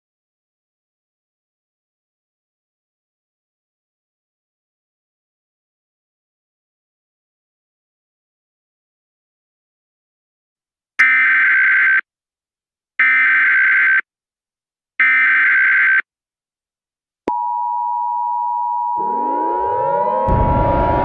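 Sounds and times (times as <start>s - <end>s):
two-tone attention signal: 18.8s - 21.0s
deep rumble: 19.0s - 21.0s
siren winding up: 19.0s - 21.0s.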